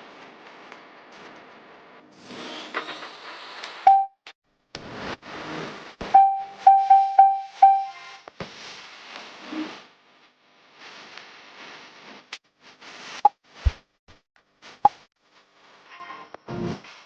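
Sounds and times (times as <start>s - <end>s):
short electronic beeps: 3.9s - 4.2s, 6.2s - 8.0s.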